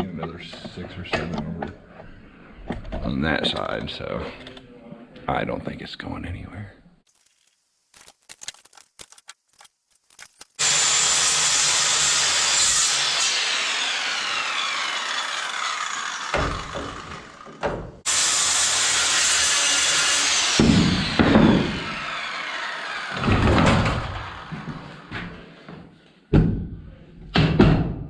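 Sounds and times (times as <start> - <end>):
power saw cutting wood: 8.7 - 25.5.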